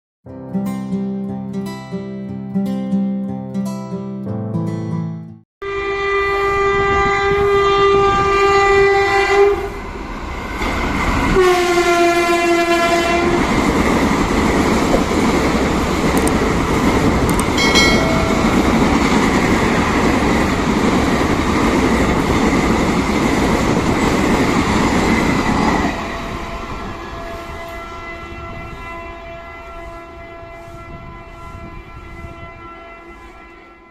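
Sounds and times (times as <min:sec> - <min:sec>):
locomotive horn blast: 0:05.6 - 0:09.8, 0:11.4 - 0:13.5, 0:26.1 - 0:33.9
train rushing rumble: 0:07.3 - 0:32.4
train wheel clatter: 0:13.4 - 0:25.9.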